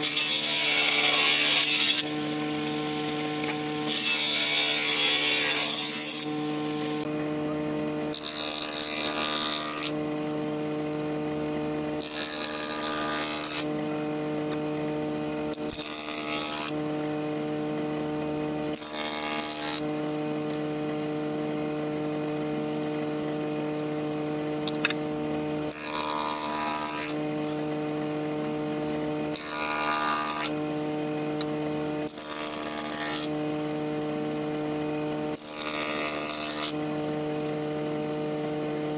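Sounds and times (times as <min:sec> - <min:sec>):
tool cutting into wood: 0:00.0 - 0:07.1, 0:08.1 - 0:10.0, 0:12.0 - 0:13.8, 0:15.5 - 0:16.8, 0:18.7 - 0:19.9, 0:25.7 - 0:27.7, 0:29.3 - 0:30.6, 0:31.4 - 0:33.4, 0:35.3 - 0:37.0
power tool motor hum: 0:00.0 - 0:38.9.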